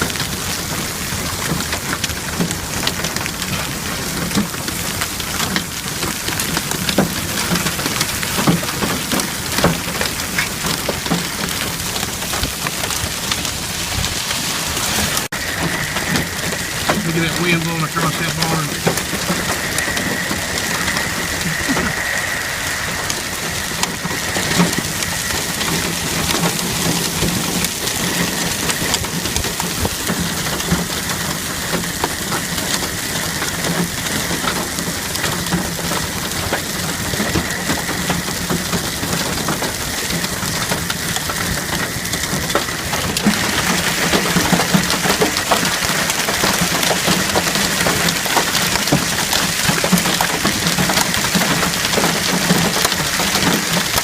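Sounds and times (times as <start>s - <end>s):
heavy rain pattering: 0.0s - 54.0s.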